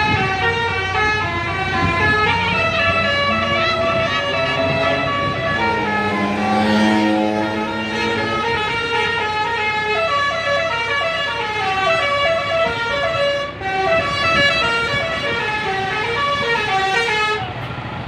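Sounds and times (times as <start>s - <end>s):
musical air horn melody: 0.0s - 17.4s.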